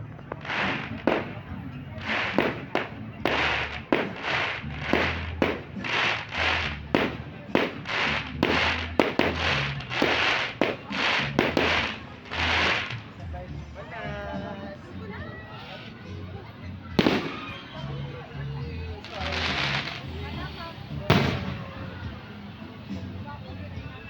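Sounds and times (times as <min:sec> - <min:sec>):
fireworks bangs: 0:00.0 - 0:13.2, 0:17.0 - 0:17.9, 0:19.0 - 0:22.1
fireworks hissing bursts: 0:00.0 - 0:13.2, 0:17.0 - 0:18.4, 0:19.0 - 0:23.0.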